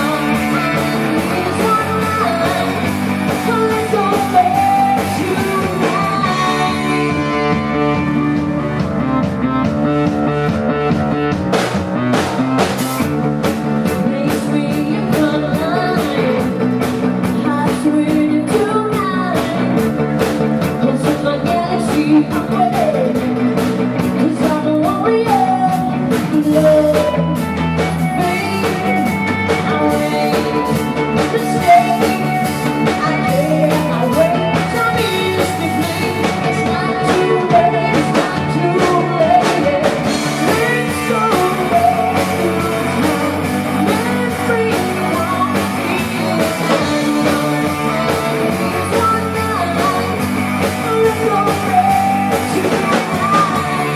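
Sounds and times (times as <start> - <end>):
person singing: 0.0 - 8.8, 13.8 - 53.9
drums: 0.0 - 53.9
electric guitar: 0.0 - 53.9.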